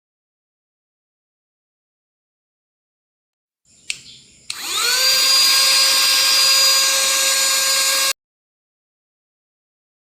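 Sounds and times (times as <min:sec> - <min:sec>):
vacuum cleaner switch click: 0:03.9 - 0:04.8
vacuum cleaner motor whine: 0:04.5 - 0:08.2.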